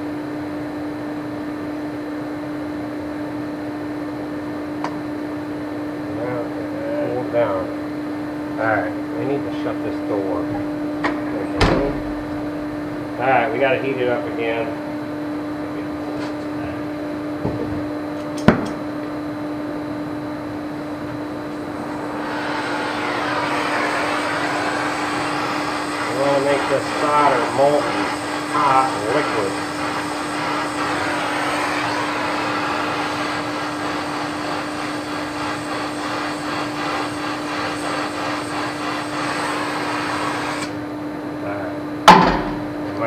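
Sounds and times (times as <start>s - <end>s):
mechanical hum: 0.0s - 43.0s
hiss: 21.8s - 40.8s.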